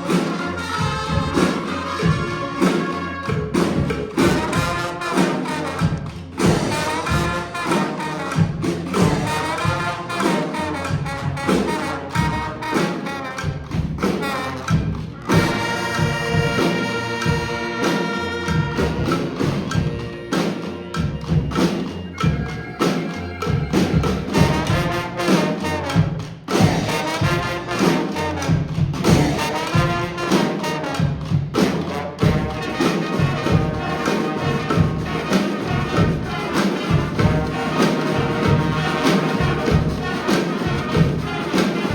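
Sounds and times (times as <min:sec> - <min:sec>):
brass street band playing: 0:00.0 - 0:41.9.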